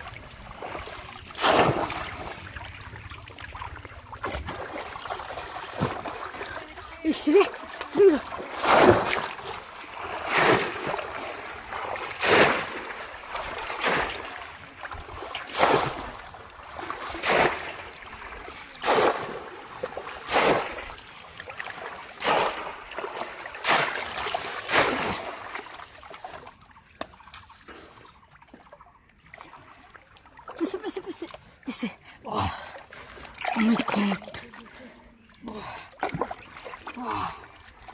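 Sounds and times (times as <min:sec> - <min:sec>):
fish trap splashing in water: 0:00.5 - 0:26.0.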